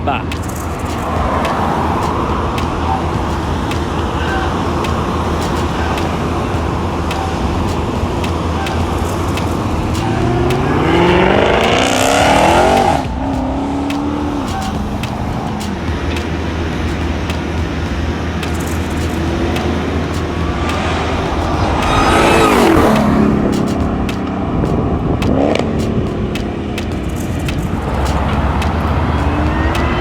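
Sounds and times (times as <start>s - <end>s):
car engine accelerating hard: 0.0s - 30.0s.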